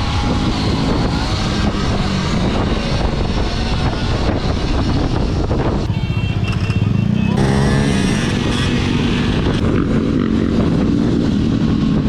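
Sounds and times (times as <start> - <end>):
vehicle noise: 0.0 - 12.0
wind buffeting microphone: 0.0 - 12.0.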